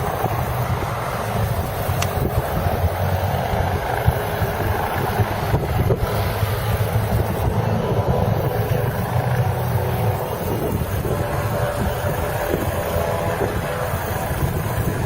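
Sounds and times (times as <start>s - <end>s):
helicopter rotor drone: 0.0s - 15.0s
wind on microphone: 0.0s - 15.0s.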